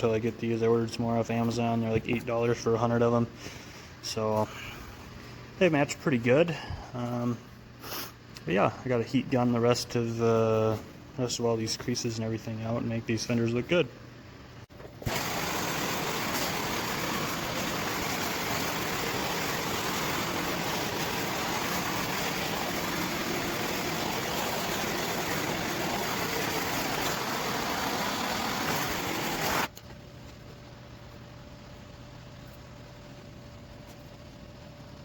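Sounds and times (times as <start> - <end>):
faint hum: 0.0 - 35.0
heat gun blowing: 15.0 - 29.7.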